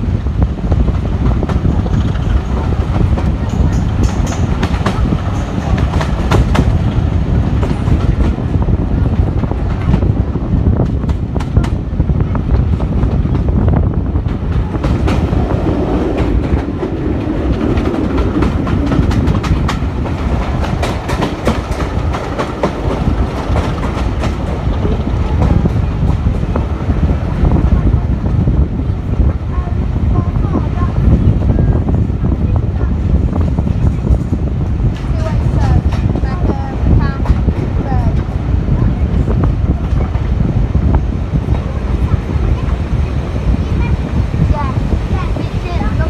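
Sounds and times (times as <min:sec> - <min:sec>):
train rumbling on track: 0:00.0 - 0:46.0
wheels clicking over rail joints: 0:00.8 - 0:11.9, 0:14.2 - 0:27.9.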